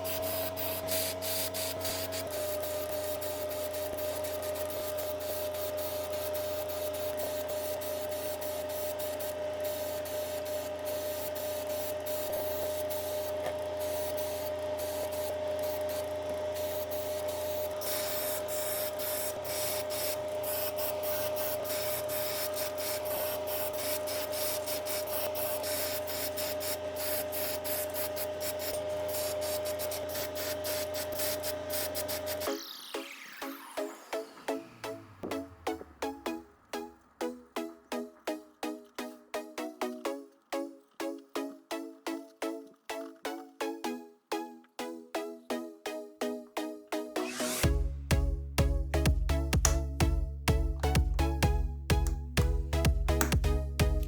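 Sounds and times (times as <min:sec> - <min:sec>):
pressurised tool spraying hiss: 0:00.0 - 0:32.8
machine hum: 0:00.0 - 0:39.0.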